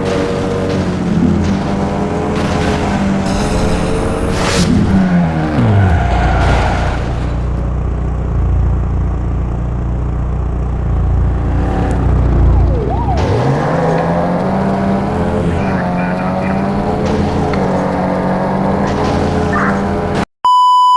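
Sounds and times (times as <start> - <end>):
vehicle engine revving: 0.0 - 20.2.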